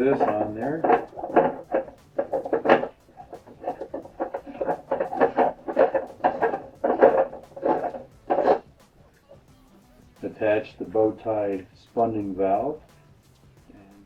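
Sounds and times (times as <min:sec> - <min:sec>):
plastic lid rubbing on threads: 0:00.0 - 0:09.0.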